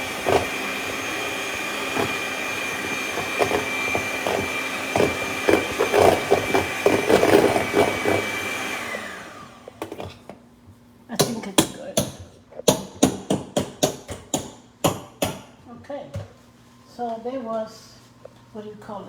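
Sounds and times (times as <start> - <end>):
electric mixer motor whine: 0.0 - 10.0.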